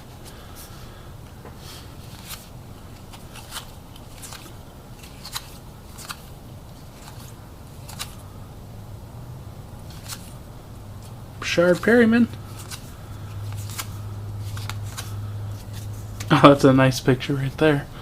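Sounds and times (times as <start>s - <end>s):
low steady hum: 0.0s - 18.0s
cards clicking and snapping: 2.1s - 8.2s, 9.9s - 10.4s, 11.7s - 16.3s.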